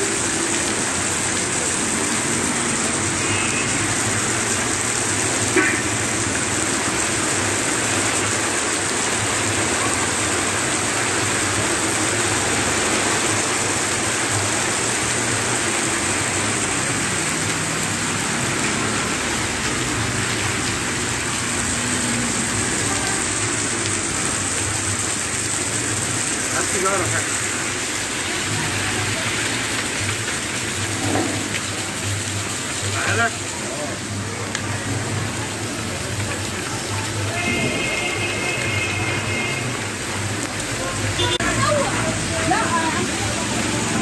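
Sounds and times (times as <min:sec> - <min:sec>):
heavy rain: 0:00.0 - 0:44.0.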